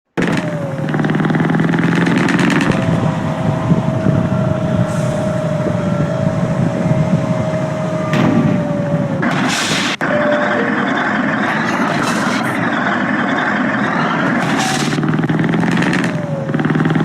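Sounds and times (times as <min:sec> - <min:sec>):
bus diesel engine running: 0:00.0 - 0:17.0
steady high whine: 0:00.4 - 0:16.6.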